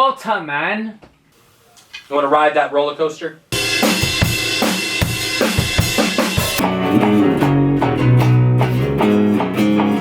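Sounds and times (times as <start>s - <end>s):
drum kit with cymbals: 3.5s - 10.0s
electric guitar: 6.4s - 10.0s
held bass notes: 6.6s - 10.0s.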